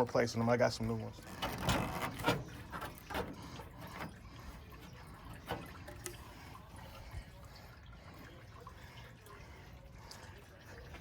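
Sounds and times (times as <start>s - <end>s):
coolant dripping and trickling: 0.0s - 11.0s.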